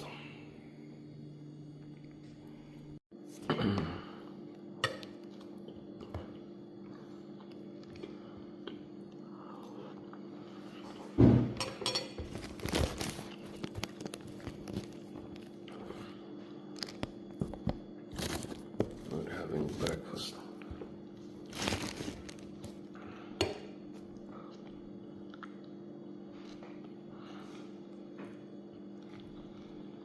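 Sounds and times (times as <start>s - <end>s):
steady low hum: 0.0s - 30.0s
plates and cutlery clinking: 11.4s - 12.4s.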